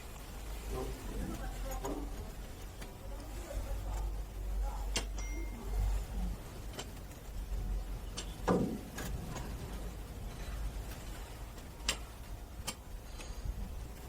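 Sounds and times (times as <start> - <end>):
sharp clicks of metal parts: 10.9 - 13.4.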